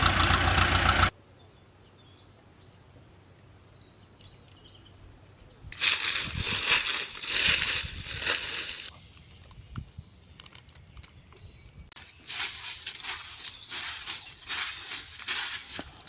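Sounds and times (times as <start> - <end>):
dry leaves crunching and rustling: 5.8 - 8.9, 12.0 - 16.0.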